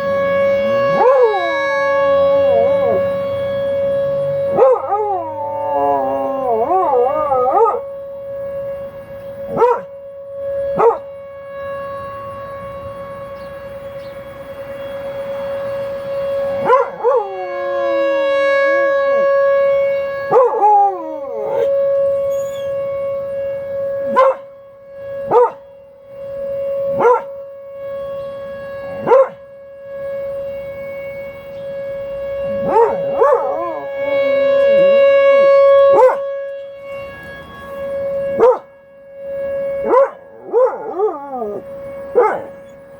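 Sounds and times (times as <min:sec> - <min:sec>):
tornado warning siren: 0:00.0 - 0:42.9
dog howling: 0:00.6 - 0:01.6, 0:02.3 - 0:03.2, 0:04.5 - 0:07.9, 0:16.6 - 0:18.1, 0:20.3 - 0:22.8, 0:32.5 - 0:35.0, 0:35.9 - 0:36.2, 0:39.8 - 0:42.7
dog barking: 0:07.4 - 0:07.8, 0:09.5 - 0:09.9, 0:10.8 - 0:11.0, 0:16.6 - 0:17.2, 0:24.1 - 0:24.5, 0:25.3 - 0:25.6, 0:27.0 - 0:27.3, 0:29.0 - 0:29.4, 0:32.6 - 0:33.7, 0:35.9 - 0:36.2, 0:38.4 - 0:38.7, 0:39.8 - 0:41.6, 0:42.2 - 0:42.5.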